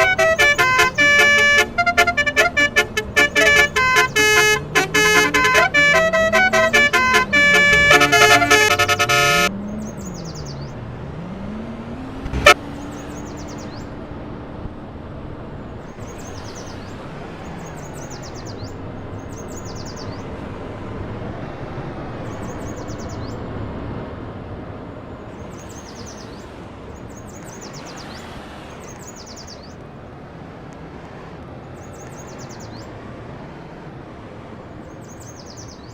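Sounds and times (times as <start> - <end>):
car horn playing a tune: 0.0 - 9.5, 12.3 - 12.6
vehicle engine revving: 0.0 - 13.2
traffic noise: 0.0 - 35.9
bird chirping: 9.6 - 10.7, 34.9 - 35.9.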